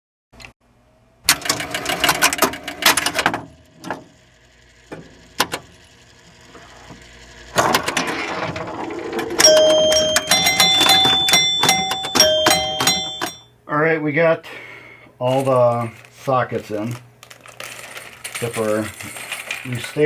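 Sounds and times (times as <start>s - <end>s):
rapid mechanical clicking and rattling: 16.9s - 20.0s.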